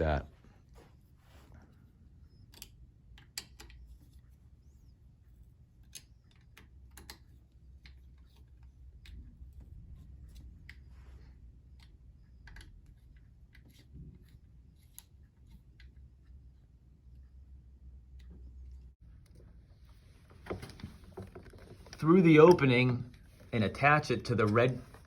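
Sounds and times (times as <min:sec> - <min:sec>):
low steady hum: 0:00.0 - 0:25.0
small parts clicking and tapping: 0:02.4 - 0:04.3, 0:05.8 - 0:10.9, 0:11.6 - 0:16.5.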